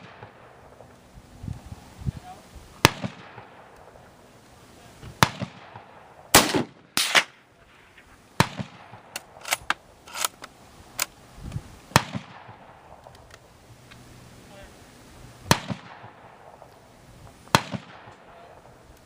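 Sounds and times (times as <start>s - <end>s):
gunshots: 0.0s - 0.9s, 2.8s - 4.0s, 5.2s - 10.2s, 11.9s - 13.0s, 15.5s - 16.7s, 17.5s - 18.8s.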